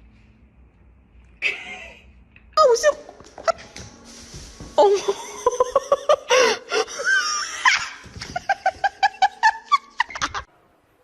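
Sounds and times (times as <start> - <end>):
person laughing hard: 5.0 - 10.5.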